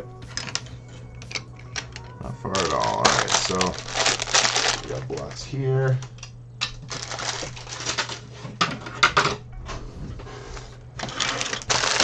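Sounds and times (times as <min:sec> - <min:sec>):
plastic bricks rattling and clicking: 0:02.5 - 0:05.4, 0:11.0 - 0:12.0.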